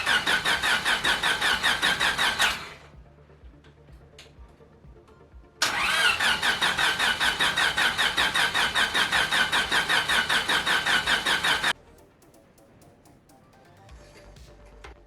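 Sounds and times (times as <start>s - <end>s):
engine cranking on starter motor: 0.0s - 2.9s, 5.6s - 11.8s.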